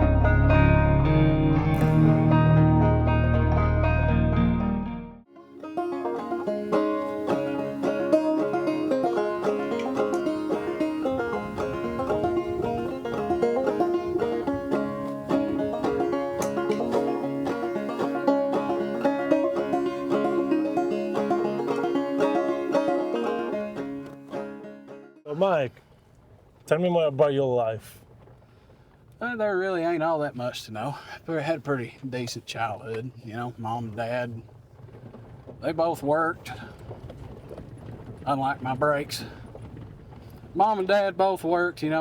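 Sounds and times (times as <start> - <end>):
banjo picking: 0.0 - 25.6.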